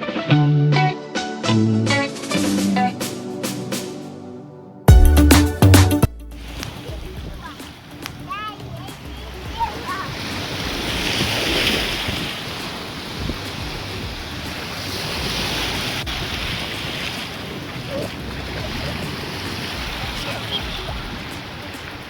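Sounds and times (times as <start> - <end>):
ocean surf washing ashore: 2.0 - 4.2, 6.4 - 22.0
wind rumbling on microphone: 6.5 - 22.0.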